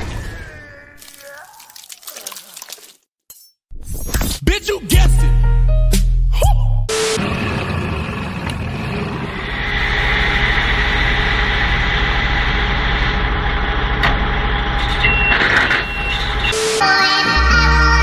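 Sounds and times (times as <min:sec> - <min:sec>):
engine running with pulsing: 0:06.9 - 0:16.6.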